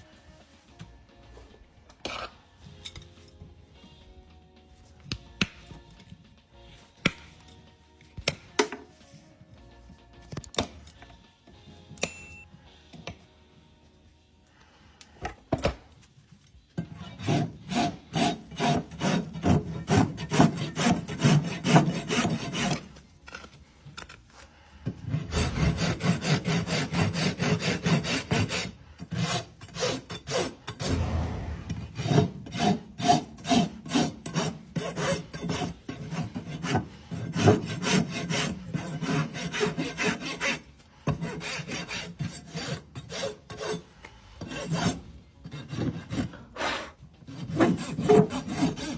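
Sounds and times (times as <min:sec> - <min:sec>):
rasp filing a hoof: 0:16.8 - 0:24.0, 0:24.8 - 0:31.2, 0:32.0 - 0:48.9.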